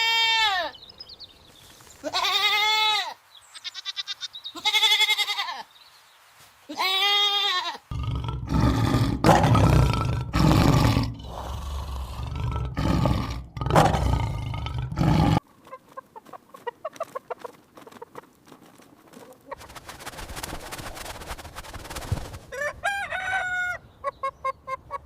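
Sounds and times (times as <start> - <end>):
large animal roaring: 7.9 - 15.4
hens clucking: 10.8 - 18.4.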